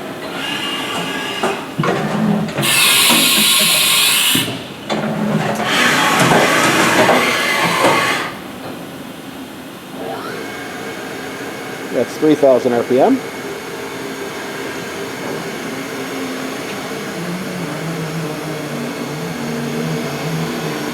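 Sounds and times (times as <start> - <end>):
motor whine: 9.8 - 20.9.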